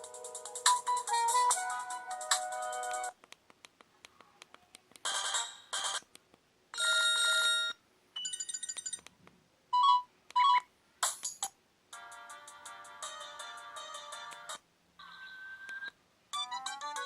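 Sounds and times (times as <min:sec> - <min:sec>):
phone ringtone melody: 0:00.0 - 0:03.1, 0:15.0 - 0:17.0.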